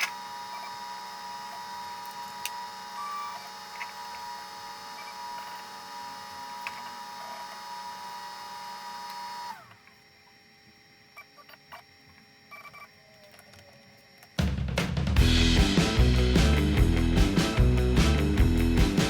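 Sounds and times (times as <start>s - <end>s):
cnc router whine: 0.0s - 14.4s
music with drums: 14.4s - 19.0s.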